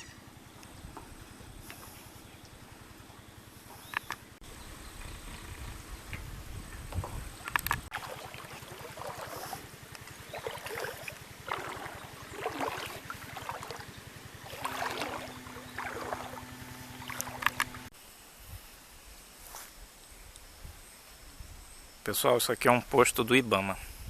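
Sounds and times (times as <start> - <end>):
boat motor running: 0.0 - 17.9
steady low hum: 0.0 - 19.0
water splashing along hull: 6.8 - 17.9.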